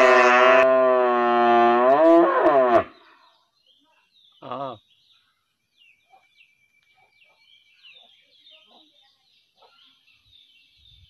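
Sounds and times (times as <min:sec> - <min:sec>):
cow mooing: 0:00.0 - 0:02.9.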